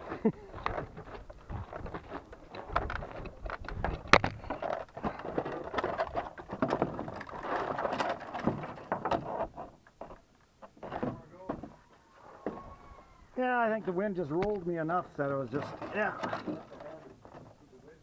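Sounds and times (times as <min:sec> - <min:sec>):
rustling and handling knocks: 0:00.0 - 0:12.8, 0:13.7 - 0:17.7
wind buffeting microphone: 0:00.4 - 0:04.7.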